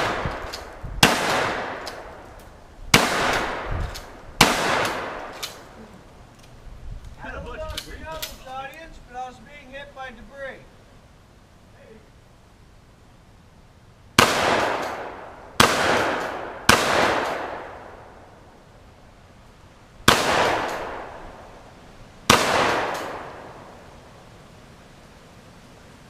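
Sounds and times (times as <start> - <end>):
gunshots with long echo: 0.0 - 2.3, 2.9 - 5.8, 14.2 - 18.6, 20.0 - 21.6, 22.2 - 24.0.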